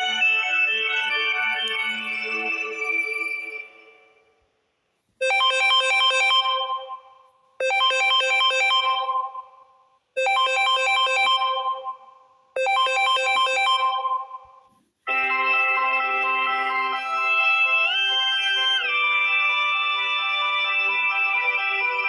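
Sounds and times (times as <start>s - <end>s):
phone ringtone: 5.2s - 9.5s, 10.2s - 14.5s.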